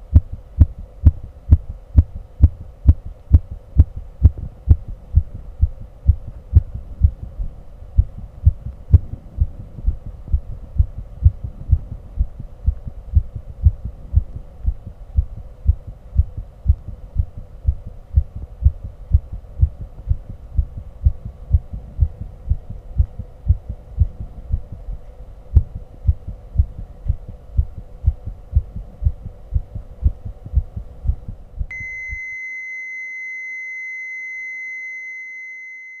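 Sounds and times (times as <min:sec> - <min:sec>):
heartbeat thumps: 0:00.0 - 0:31.8
faint hum: 0:00.0 - 0:36.0
continuous high electronic beep: 0:31.7 - 0:36.0.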